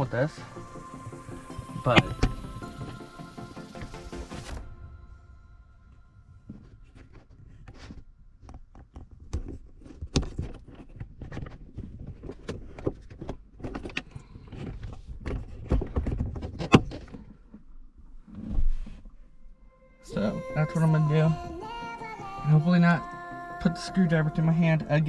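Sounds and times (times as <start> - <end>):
plastic parts clicking and clattering: 7.8 - 17.7.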